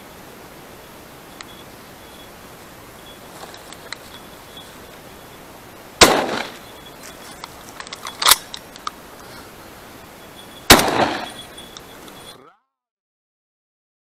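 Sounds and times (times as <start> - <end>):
shotgun shots with echo: 6.0 - 6.6, 10.7 - 11.4
sharp crack: 6.0 - 6.7, 10.7 - 11.5.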